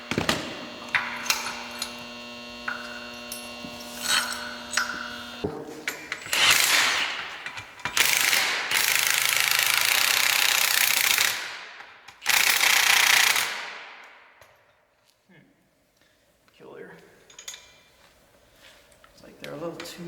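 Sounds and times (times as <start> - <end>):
air-powered tool bursts: 6.1 - 13.7.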